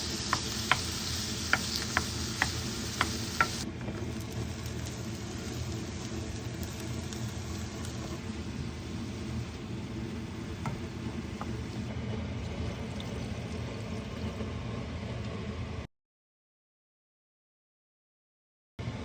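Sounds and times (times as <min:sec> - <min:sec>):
food sizzling in a pan: 0:00.0 - 0:13.4
utensil tapping a pan: 0:00.1 - 0:03.6.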